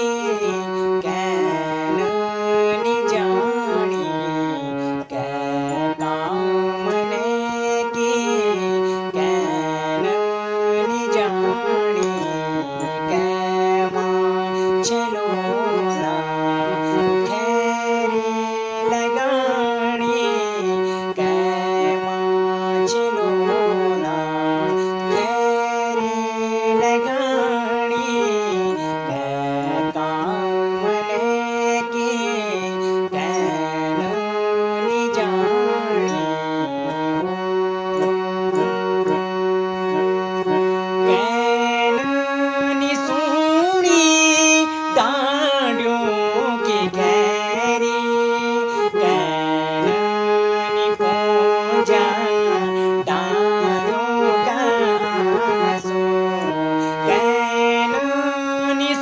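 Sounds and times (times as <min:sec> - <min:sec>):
man singing folk song: 0:31.0 - 0:33.7, 0:49.0 - 0:49.9, 0:56.8 - 0:59.0.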